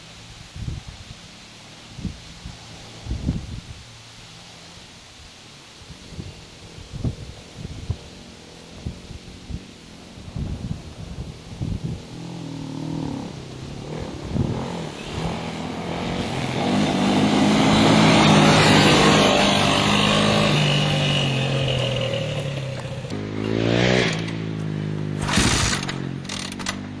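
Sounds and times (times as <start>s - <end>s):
atv engine revving: 6.0s - 27.0s.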